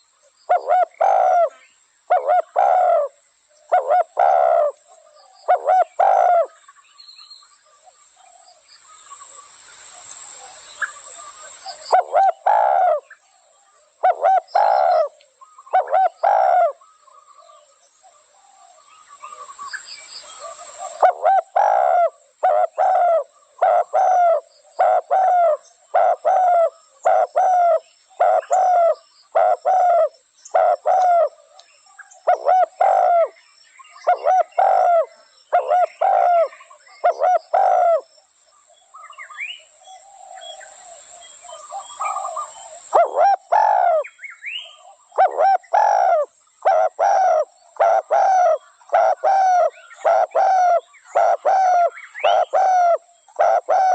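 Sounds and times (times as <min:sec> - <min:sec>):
dove cooing: 0:00.0 - 0:06.7, 0:11.0 - 0:13.2, 0:14.0 - 0:17.6, 0:20.3 - 0:31.5, 0:32.2 - 0:33.4, 0:34.0 - 0:38.1, 0:40.0 - 0:53.9
faint bird chirps: 0:00.0 - 0:53.9.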